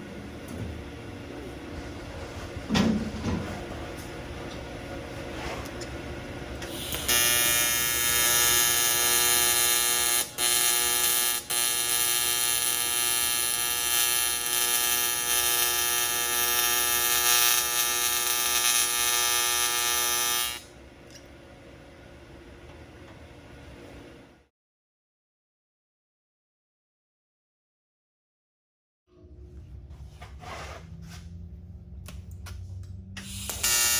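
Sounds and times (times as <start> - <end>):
welding arc buzzing: 6.6 - 20.8, 33.2 - 33.9.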